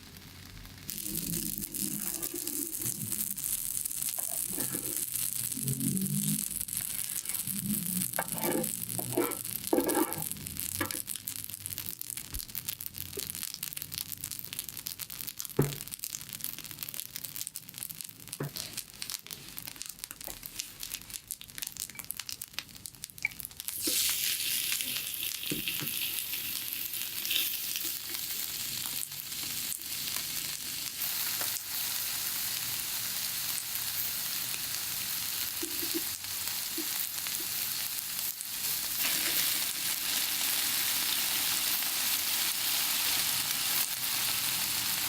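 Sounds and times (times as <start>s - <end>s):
food sizzling on hot plate: 0.0s - 45.0s.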